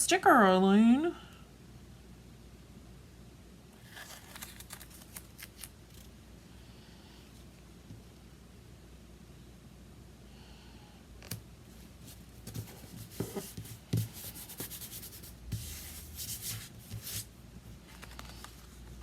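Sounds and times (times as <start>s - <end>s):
scratchy rustling: 12.0s - 17.3s
hands rubbing paper: 12.2s - 17.3s.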